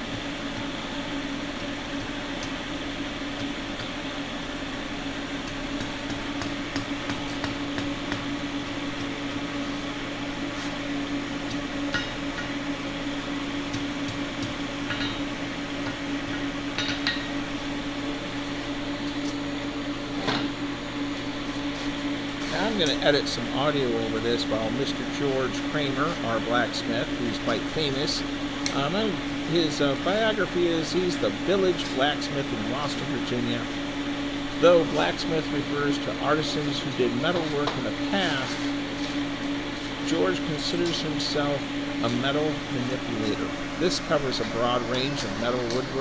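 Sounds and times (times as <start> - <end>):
fan humming: 0.0 - 46.0.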